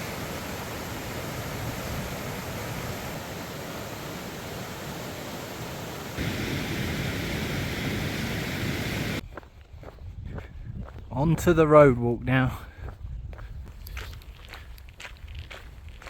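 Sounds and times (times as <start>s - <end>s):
fast-flowing creek water rushing: 0.0s - 9.2s.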